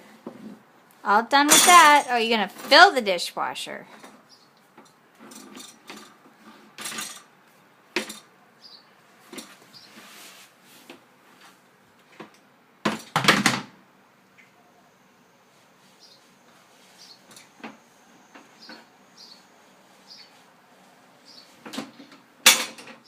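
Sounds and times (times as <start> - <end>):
dishes and cutlery clinking: 1.5 - 2.1.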